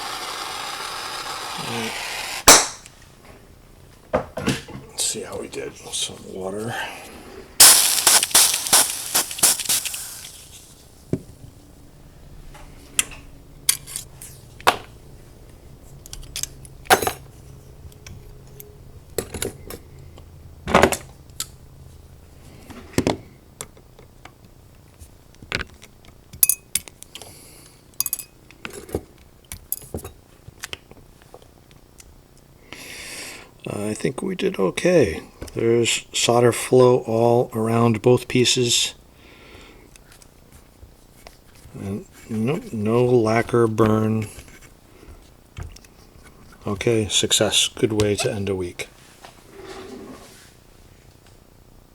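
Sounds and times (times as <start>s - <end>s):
water sizzling on hot metal: 7.6s - 10.8s.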